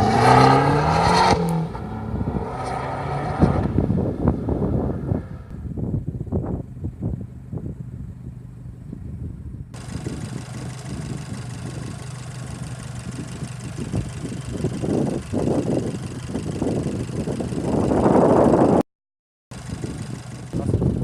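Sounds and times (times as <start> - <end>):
turbocharged car engine running: 9.8 - 18.8, 19.5 - 21.0.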